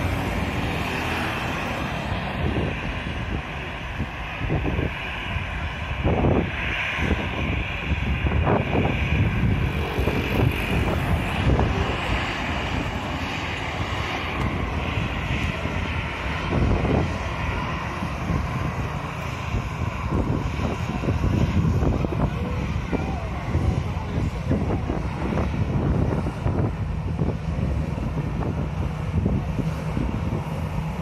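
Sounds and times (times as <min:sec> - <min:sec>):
airliner engine noise: 0:00.0 - 0:31.0
wind buffeting microphone: 0:00.0 - 0:31.0.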